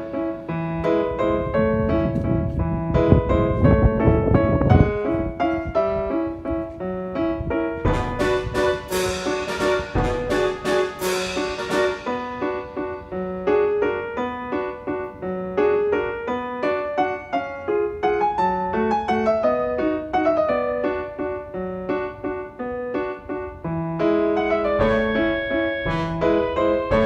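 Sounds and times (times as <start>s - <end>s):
light piano waltz: 0.0s - 27.0s.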